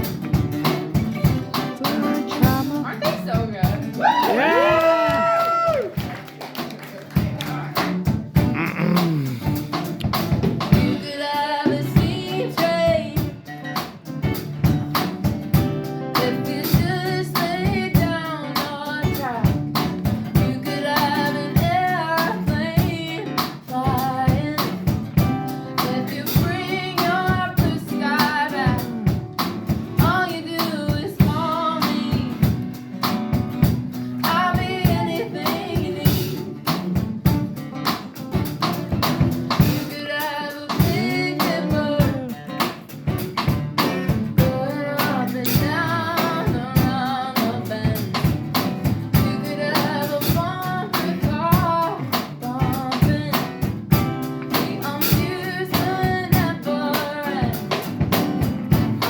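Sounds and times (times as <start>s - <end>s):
rock band playing: 0.0s - 59.0s
person singing lead vocal: 8.4s - 9.7s, 10.8s - 13.5s, 20.4s - 24.8s, 34.1s - 36.7s, 39.6s - 43.2s, 44.3s - 48.4s, 49.1s - 53.7s, 54.5s - 57.8s.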